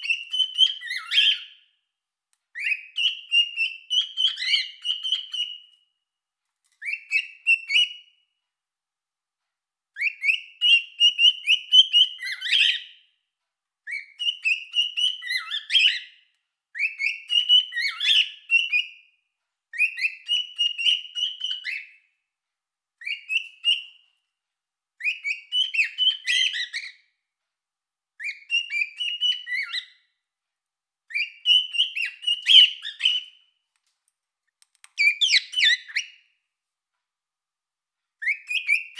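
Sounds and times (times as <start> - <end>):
cockatiel whistling: 0.0 - 1.6, 2.6 - 5.8, 6.8 - 8.1, 10.0 - 12.9, 13.9 - 16.2, 16.8 - 19.0, 19.7 - 22.0, 23.0 - 24.0, 25.0 - 27.0, 28.2 - 30.0, 31.1 - 33.4, 34.9 - 36.3, 38.2 - 38.9.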